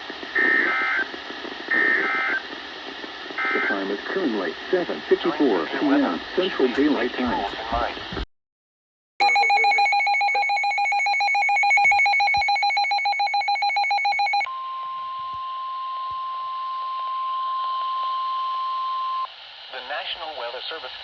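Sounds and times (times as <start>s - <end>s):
steady single-pitch alarm tone: 9.2s - 19.3s.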